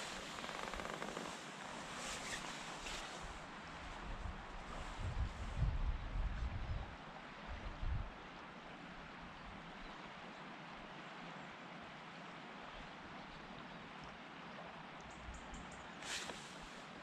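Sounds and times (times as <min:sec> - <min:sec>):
brief rustle or knock: 0:16.0 - 0:16.6.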